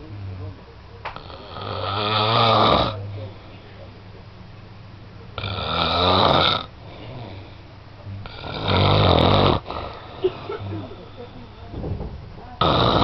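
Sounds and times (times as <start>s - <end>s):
loud snoring: 1.2s - 3.0s, 5.4s - 11.2s, 12.6s - 13.0s.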